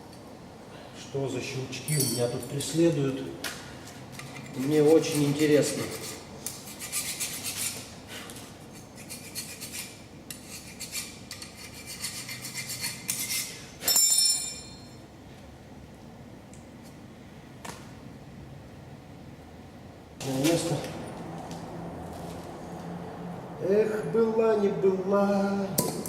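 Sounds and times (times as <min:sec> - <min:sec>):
metal tools clinking and scraping: 0:01.8 - 0:02.8, 0:13.2 - 0:15.0
ringing metallic clank: 0:01.9 - 0:02.5, 0:13.8 - 0:15.0.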